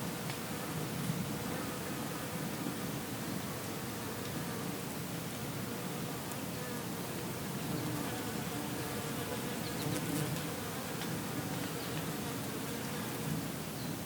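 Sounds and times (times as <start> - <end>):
bees buzzing: 7.2 - 13.2.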